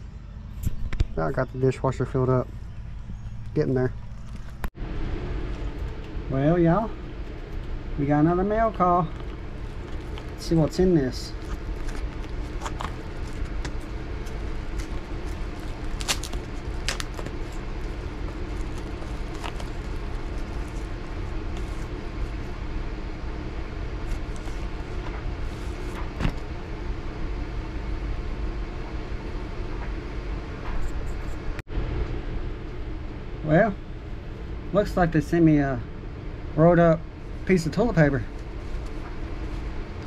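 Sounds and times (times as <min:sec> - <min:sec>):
low machine hum: 0:00.0 - 0:40.0
package handling clicks and rustles: 0:09.1 - 0:10.4, 0:11.4 - 0:20.9.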